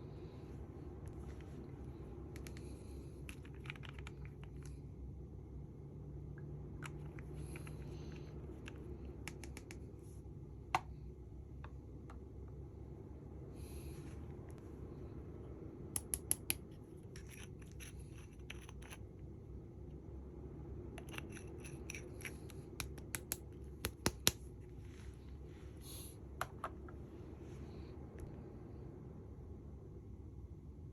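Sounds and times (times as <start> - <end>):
low steady hum: 0.0 - 30.9
makeup packaging clicks and taps: 3.3 - 4.8, 6.8 - 10.0, 22.6 - 24.5.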